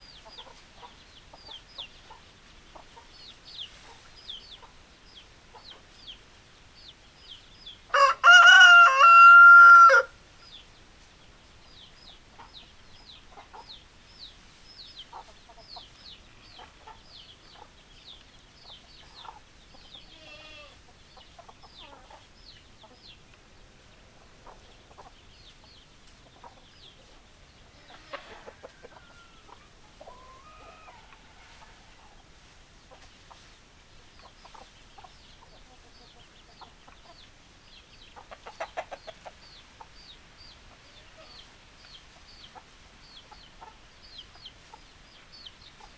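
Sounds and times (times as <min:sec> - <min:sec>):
drawn-out chicken call: 0:07.9 - 0:10.2, 0:27.5 - 0:32.3, 0:38.2 - 0:40.0
chicken squawk: 0:08.0 - 0:10.1, 0:27.8 - 0:32.2
hens clucking: 0:24.2 - 0:37.3, 0:38.1 - 0:41.5.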